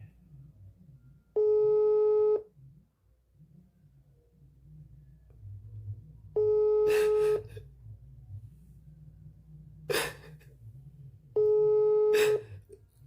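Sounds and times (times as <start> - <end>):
telephone ringback beep: 1.4 - 2.4, 6.4 - 7.5, 11.4 - 12.4.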